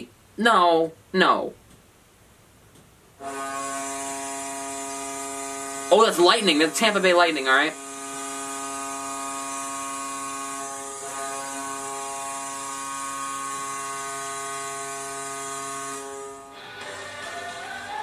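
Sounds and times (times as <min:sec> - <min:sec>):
goal horn blast: 0:03.2 - 0:05.6.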